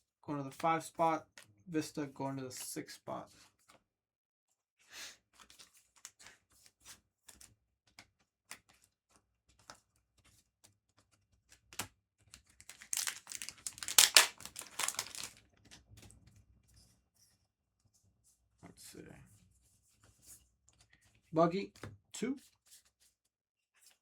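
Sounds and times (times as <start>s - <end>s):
foil wrapper tearing and crinkling: 12.6s - 15.4s
cards clicking and tapping: 12.7s - 15.4s.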